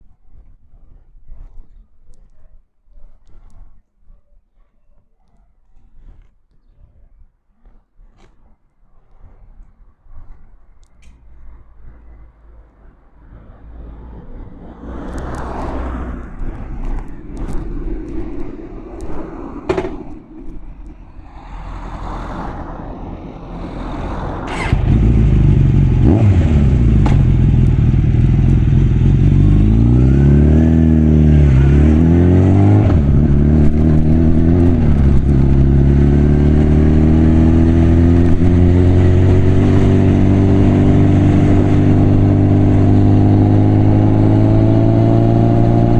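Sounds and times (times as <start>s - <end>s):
motorcycle engine starting and revving: 23.6s - 45.9s.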